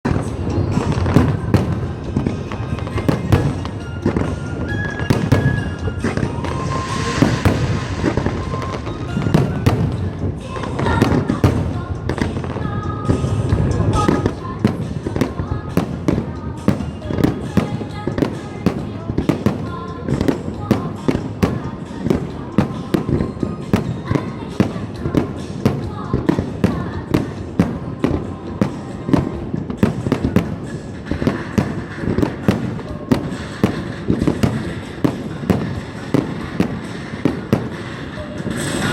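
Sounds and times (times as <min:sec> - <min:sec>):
fireworks banging with echoes: 0:00.0 - 0:38.9
fireworks crackling hiss: 0:00.1 - 0:38.9.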